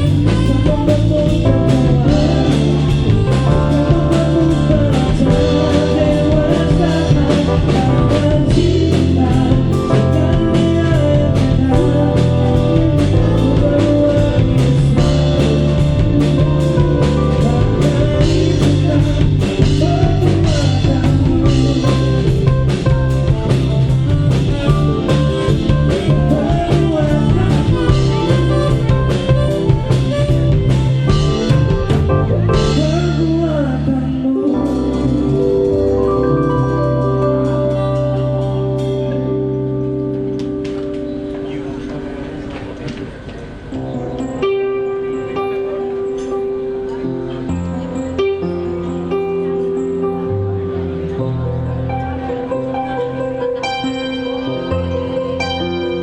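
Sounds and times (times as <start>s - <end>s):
person singing: 0.0s - 42.8s
rock band playing: 0.0s - 56.0s.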